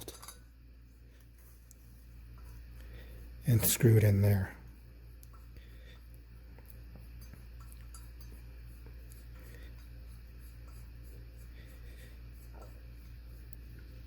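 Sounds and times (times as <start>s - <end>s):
small metallic clicks and scrapes: 0.0s - 0.5s, 6.7s - 8.4s
steady low hum: 0.0s - 14.0s.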